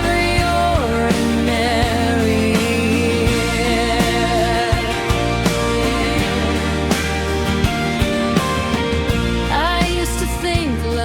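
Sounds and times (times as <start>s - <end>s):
person singing: 0.0s - 7.6s
bass and drums: 0.0s - 11.0s.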